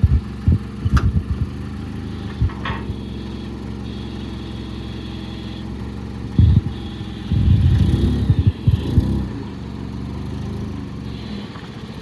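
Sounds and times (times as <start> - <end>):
low thumps: 0.0 - 1.6, 2.2 - 3.1, 6.4 - 9.3
forklift engine idling: 0.0 - 12.0.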